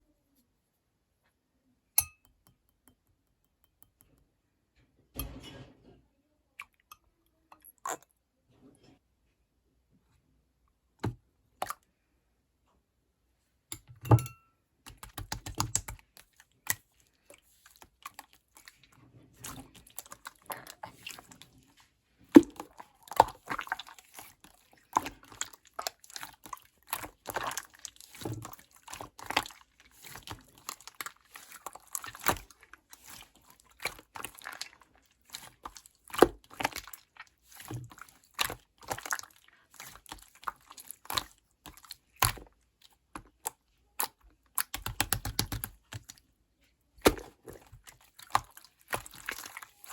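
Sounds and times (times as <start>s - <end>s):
slime squishing and popping: 22.3s - 46.2s, 47.0s - 49.9s.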